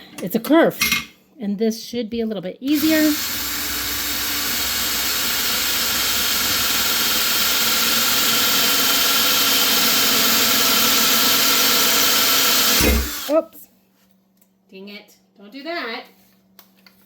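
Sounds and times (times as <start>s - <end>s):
electric drill boring metal: 2.7s - 13.4s
drill bit snapping: 2.8s - 13.4s.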